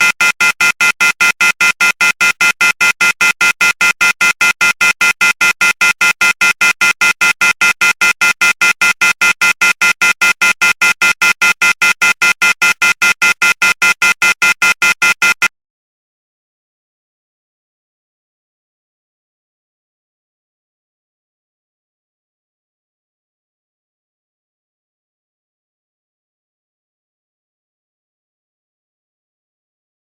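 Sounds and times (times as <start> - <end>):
rapid high-pitched phone beeps: 0.0 - 15.5.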